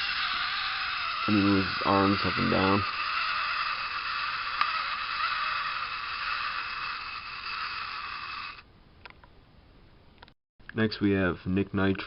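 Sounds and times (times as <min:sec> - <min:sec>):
toy mechanism buzzing whir: 0:00.0 - 0:08.7.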